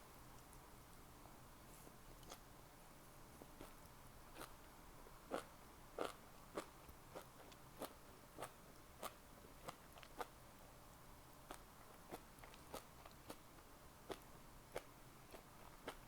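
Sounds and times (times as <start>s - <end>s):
wet chewing clicks: 11.4s - 16.0s.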